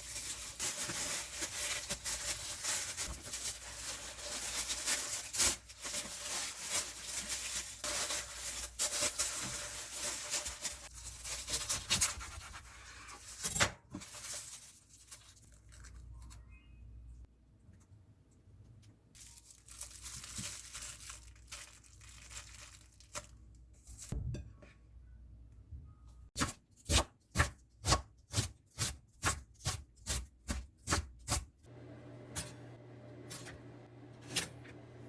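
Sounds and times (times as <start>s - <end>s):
paper rustling and crinkling: 0.0s - 16.4s, 19.2s - 24.2s.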